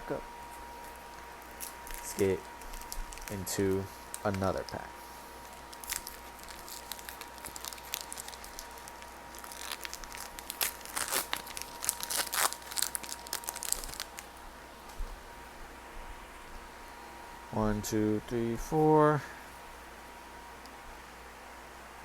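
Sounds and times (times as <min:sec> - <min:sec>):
foil wrapper tearing and crinkling: 0:00.8 - 0:04.8, 0:05.4 - 0:14.4.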